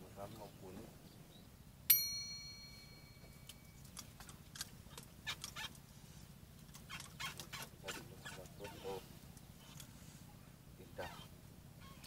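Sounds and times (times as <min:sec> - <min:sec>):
sharp metallic clink: 0:01.9 - 0:03.8
faint short animal calls: 0:11.0 - 0:12.0.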